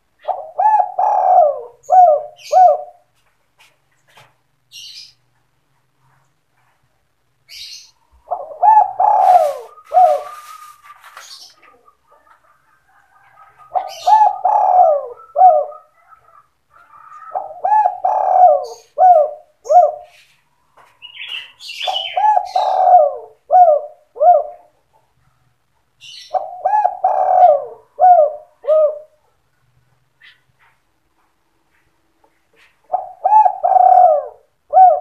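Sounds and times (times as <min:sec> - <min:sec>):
dove cooing: 0:00.0 - 0:03.1, 0:07.7 - 0:20.3, 0:21.0 - 0:24.8, 0:26.1 - 0:29.2, 0:32.6 - 0:35.0.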